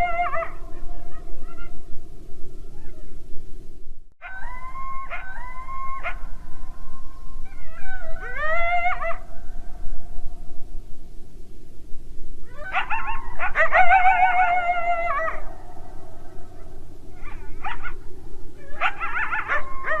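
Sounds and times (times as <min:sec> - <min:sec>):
coyote howling: 0:00.0 - 0:02.0, 0:04.2 - 0:10.4, 0:12.4 - 0:20.0
steady background noise: 0:00.0 - 0:20.0
coyote yipping: 0:12.5 - 0:15.6, 0:16.6 - 0:20.0.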